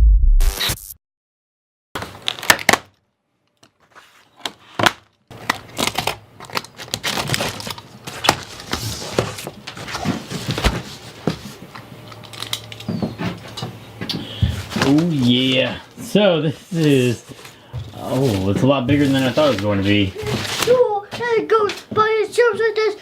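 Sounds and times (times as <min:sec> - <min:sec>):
cardboard packaging handled: 0:03.7 - 0:13.1, 0:14.4 - 0:20.9.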